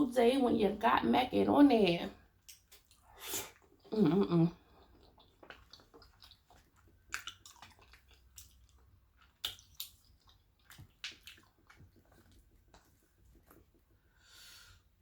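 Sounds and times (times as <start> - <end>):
person chewing food: 2.3 - 14.9
sharp mouth clicks and smacks: 4.9 - 13.7.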